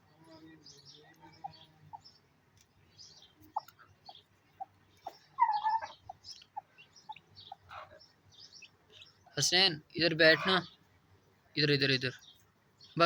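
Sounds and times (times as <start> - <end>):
birds calling: 0.0 - 13.0
high bird chirps: 2.9 - 9.4
loud curved bird call: 3.5 - 9.2.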